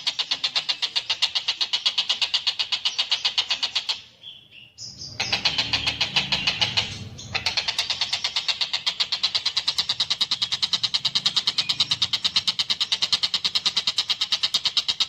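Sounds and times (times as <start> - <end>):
kingfisher rattling call: 5.2 - 15.0.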